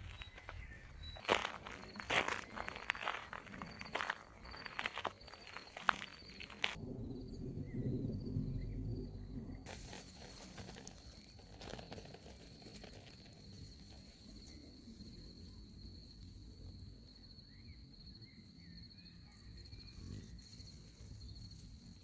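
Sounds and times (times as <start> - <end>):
insect trilling: 1.2 - 6.8.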